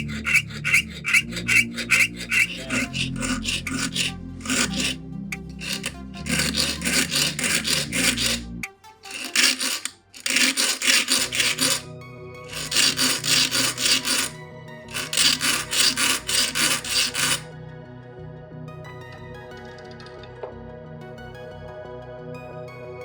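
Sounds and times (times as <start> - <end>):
hand file rasping: 0.0 - 11.9, 12.5 - 17.5
background music: 0.0 - 23.0.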